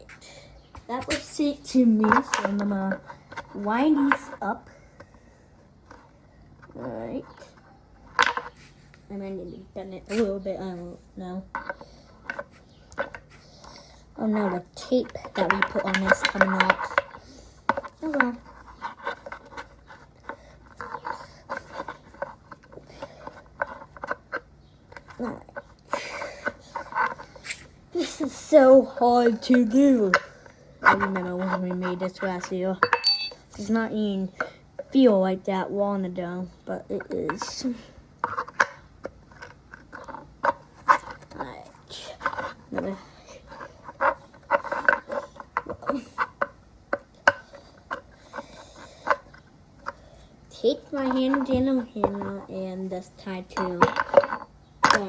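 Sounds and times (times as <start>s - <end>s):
small parts clicking and tapping: 2.0s - 4.4s, 14.4s - 27.2s, 28.2s - 33.7s, 36.9s - 52.5s, 53.1s - 55.0s
hard objects clinking and knocking: 15.0s - 25.2s, 29.2s - 33.6s, 38.2s - 50.0s, 50.8s - 52.5s, 53.1s - 55.0s.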